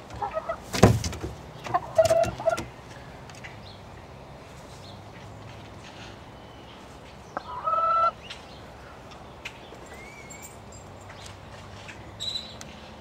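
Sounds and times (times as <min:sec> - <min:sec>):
hen calling: 0:01.7 - 0:02.7, 0:07.4 - 0:08.2.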